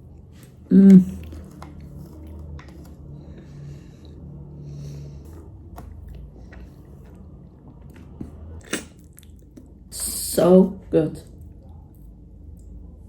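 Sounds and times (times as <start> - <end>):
person chewing wetly: 0.0 - 9.9
low steady hum: 0.0 - 13.0.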